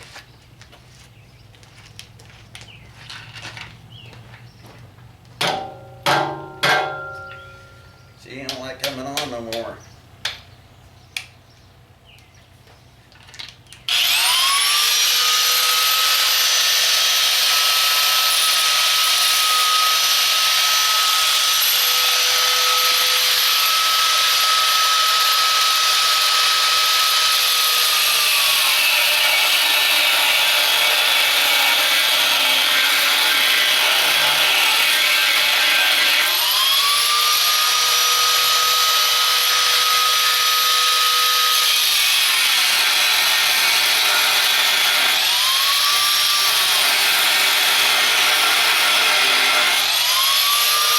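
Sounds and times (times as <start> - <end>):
electric grinder whining on steel: 13.9 - 50.9.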